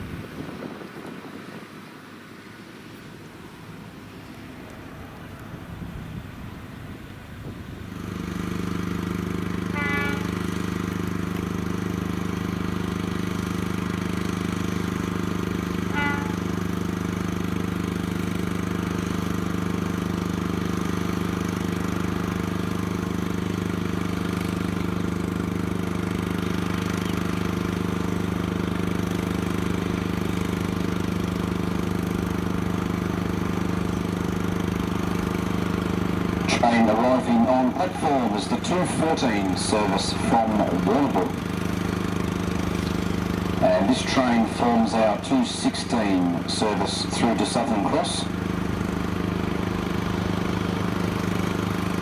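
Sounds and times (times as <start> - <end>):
diesel train engine idling: 2.2 - 52.0
brief high-pitched tones: 9.8 - 10.4, 15.9 - 16.6.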